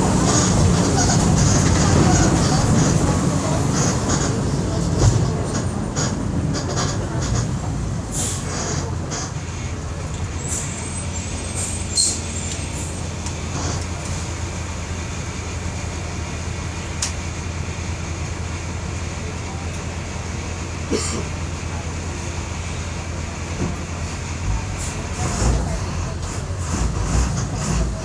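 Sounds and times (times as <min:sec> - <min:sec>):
bus engine running: 0:00.0 - 0:28.0.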